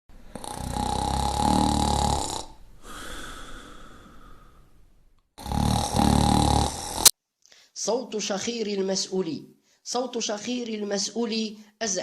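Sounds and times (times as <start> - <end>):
person snoring: 0.3 - 4.6, 5.4 - 7.1.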